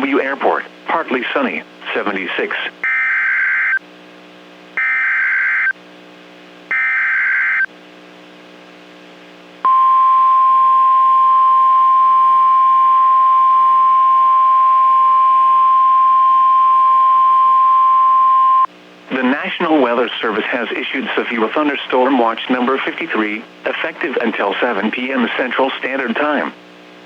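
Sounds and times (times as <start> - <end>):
steady warning alarm tone: 4.8 - 5.7, 6.7 - 7.7.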